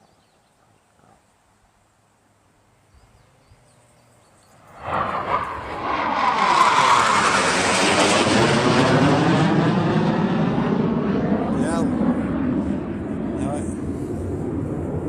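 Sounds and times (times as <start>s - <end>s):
jet engine roar flying past: 4.6s - 15.0s.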